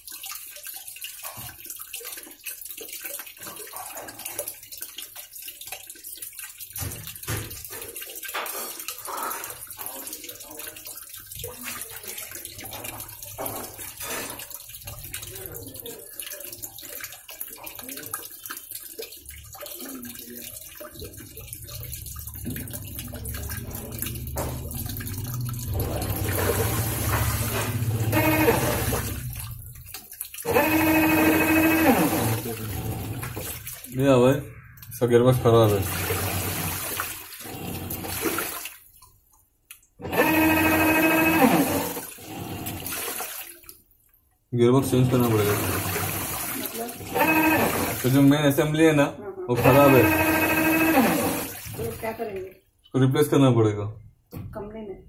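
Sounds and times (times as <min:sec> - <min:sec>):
washing machine filling with water: 0:00.0 - 0:52.6
washing machine motor whining drone: 0:23.0 - 0:29.4, 0:30.5 - 0:33.2, 0:40.0 - 0:42.8, 0:47.0 - 0:48.2, 0:49.6 - 0:51.6.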